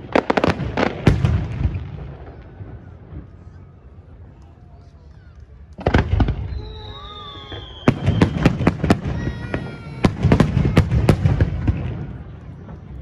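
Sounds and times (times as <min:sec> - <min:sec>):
firework bang: 0:00.0 - 0:03.3, 0:05.8 - 0:12.3
crackling firework bangs: 0:00.0 - 0:03.6, 0:05.7 - 0:13.0
firework whistling: 0:05.8 - 0:13.0.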